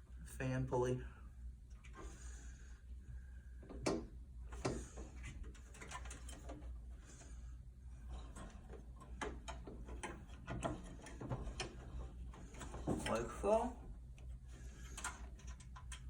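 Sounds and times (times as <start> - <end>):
small clicks and knocks of motor: 3.6 - 7.3, 8.1 - 13.4, 14.1 - 16.0.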